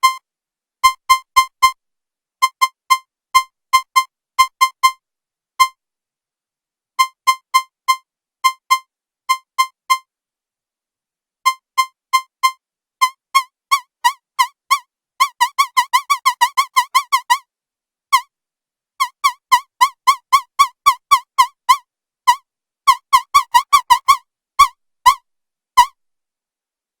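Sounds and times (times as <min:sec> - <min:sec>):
synthesizer squeaky chirps: 0:22.3 - 0:25.2.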